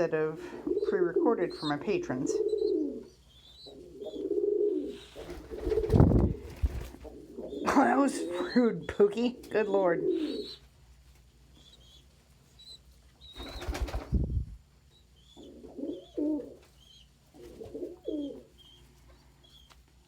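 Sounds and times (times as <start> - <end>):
pigeon cooing: 0.2 - 8.6, 9.4 - 10.6, 15.3 - 16.7, 17.3 - 18.7
pigeon wings flapping: 5.2 - 7.2, 13.4 - 14.3.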